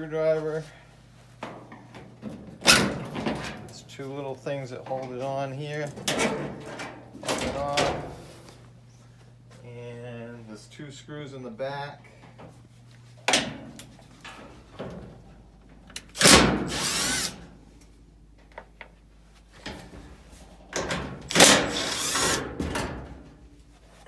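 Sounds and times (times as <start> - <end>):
power screwdriver running: 16.1 - 17.4, 21.3 - 22.4.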